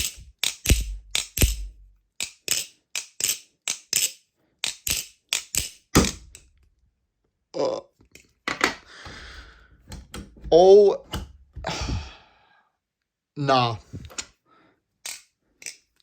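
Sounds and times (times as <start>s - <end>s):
trainer knife handles clacking: 0.0s - 5.8s, 15.0s - 16.0s.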